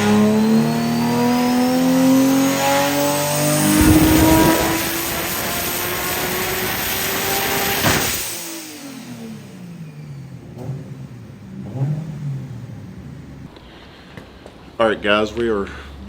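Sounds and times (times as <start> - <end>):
car engine at full throttle: 0.0 - 13.5
engine throttle blips: 3.5 - 5.6
exhaust pop: 3.6 - 5.6.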